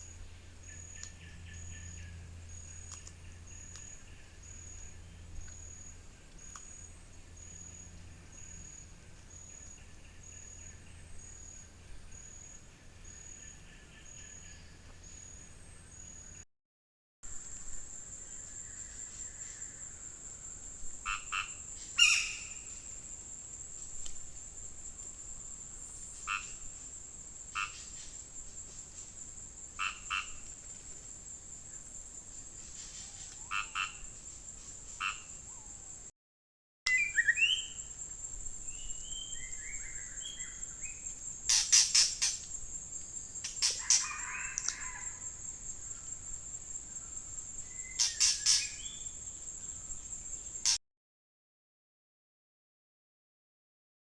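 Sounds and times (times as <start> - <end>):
frogs croaking: 21.0 - 22.8, 26.2 - 26.7, 27.5 - 27.9, 29.7 - 30.6, 33.4 - 34.1, 35.0 - 35.7, 37.5 - 49.3
chirping calls: 38.8 - 42.6, 43.4 - 45.3, 47.7 - 49.1.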